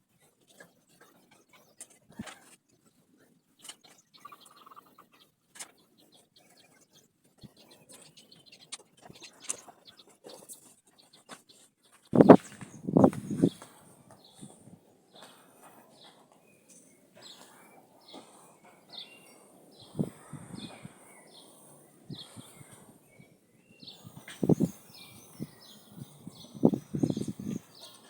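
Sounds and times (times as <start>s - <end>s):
low thumps: 12.2s - 13.6s.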